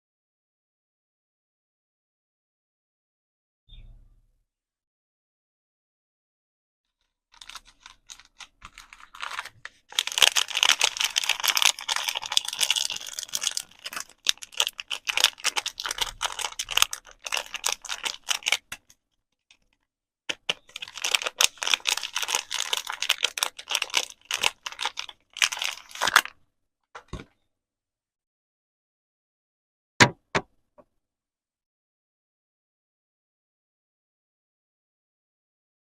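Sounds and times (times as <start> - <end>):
wrapper crinkling: 7.3 - 19.0, 20.3 - 26.3.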